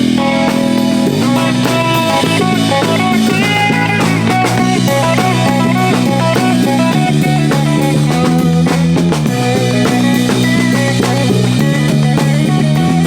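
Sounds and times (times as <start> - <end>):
drum kit: 0.0 - 13.0
electric guitar: 0.0 - 13.0.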